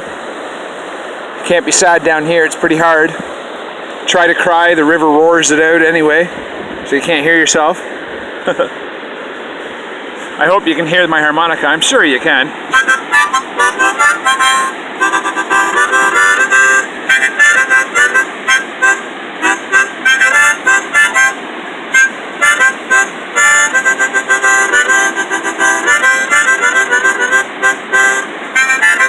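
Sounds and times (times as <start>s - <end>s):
river rapids roaring: 0.0s - 29.0s
harmonica playing: 12.7s - 29.0s.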